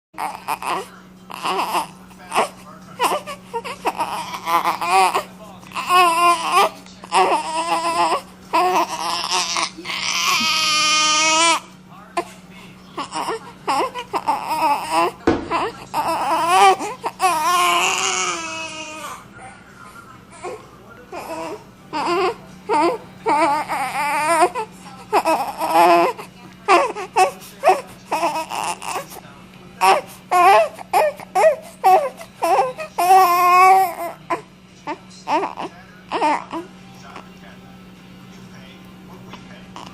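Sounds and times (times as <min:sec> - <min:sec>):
baby crying: 0:00.2 - 0:12.3, 0:13.0 - 0:19.3, 0:20.3 - 0:29.2, 0:29.8 - 0:36.7
baby babbling: 0:13.0 - 0:19.2, 0:21.2 - 0:29.0.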